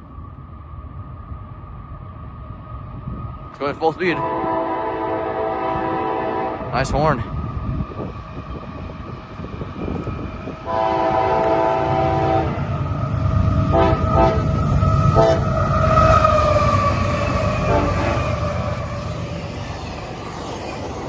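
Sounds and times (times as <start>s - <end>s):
train rumble: 0.0s - 21.0s
train air horn blasts: 4.1s - 6.8s, 10.7s - 12.6s, 13.7s - 14.5s, 15.2s - 15.5s, 17.6s - 18.4s.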